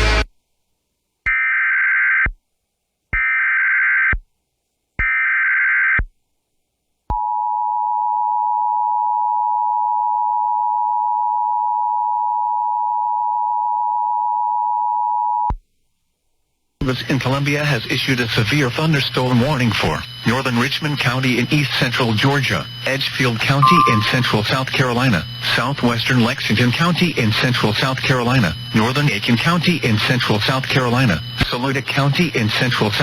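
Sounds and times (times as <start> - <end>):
two-tone attention signal: 23.6 - 24.6.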